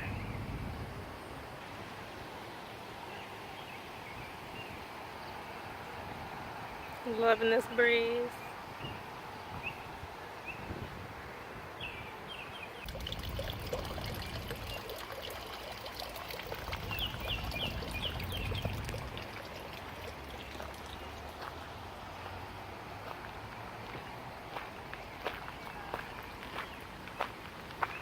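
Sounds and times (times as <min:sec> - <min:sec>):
water trickling and splashing: 0:12.8 - 0:28.0
bird chirping: 0:16.6 - 0:21.3.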